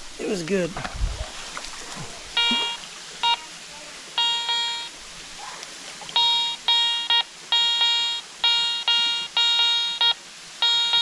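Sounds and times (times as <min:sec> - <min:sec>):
metal detector beeps: 0:02.4 - 0:03.4, 0:04.2 - 0:04.9, 0:06.2 - 0:11.0.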